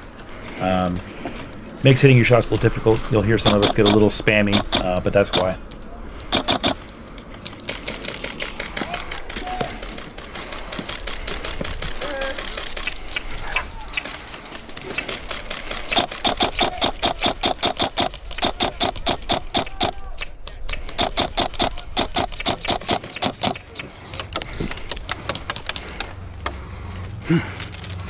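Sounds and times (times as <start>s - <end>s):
airsoft rifle firing: 2.6s - 5.6s, 6.2s - 9.9s, 14.8s - 20.2s, 20.8s - 24.0s.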